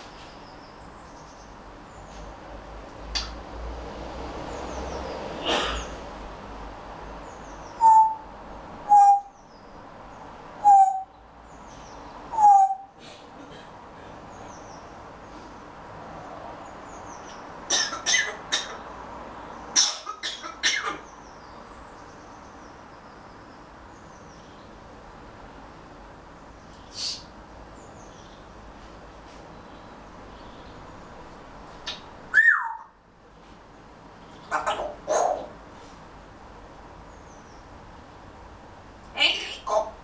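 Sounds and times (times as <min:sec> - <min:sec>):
parrot whistled hoots: 0:07.8 - 0:08.3, 0:08.9 - 0:09.3, 0:10.6 - 0:11.1, 0:32.4 - 0:32.9.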